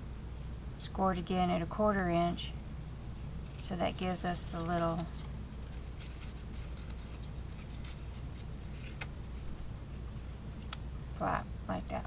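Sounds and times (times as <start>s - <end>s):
low steady hum: 0.0s - 12.0s
paper rustling: 3.4s - 10.8s.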